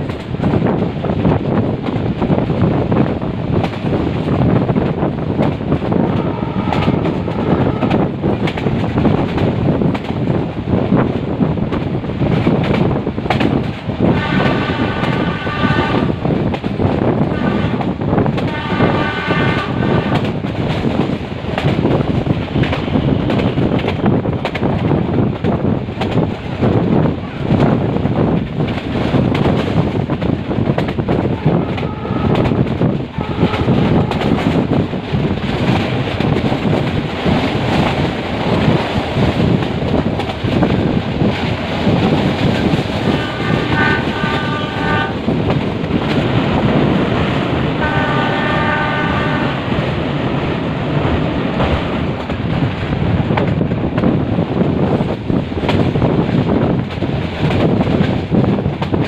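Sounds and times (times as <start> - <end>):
train rumbling along track: 0.0 - 59.0
locomotive horn blasts: 6.1 - 8.0, 14.1 - 16.2, 17.3 - 17.9, 18.5 - 20.3, 31.5 - 34.4, 43.0 - 45.2, 47.8 - 49.7.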